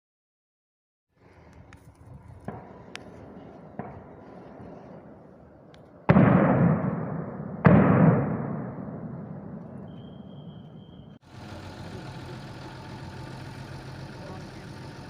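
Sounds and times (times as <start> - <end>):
rolling echo: 1.5 - 15.0
distant gunshots: 2.4 - 10.8.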